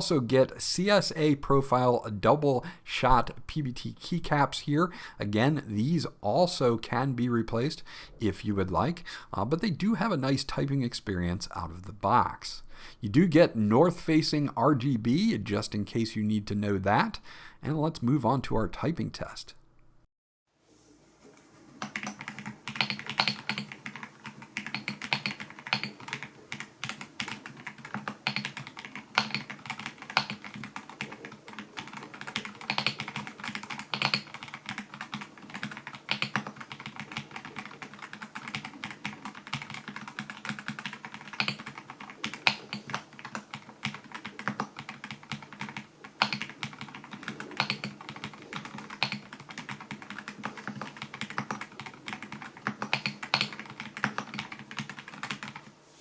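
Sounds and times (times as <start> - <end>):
mechanical keyboard typing: 21.8 - 55.7.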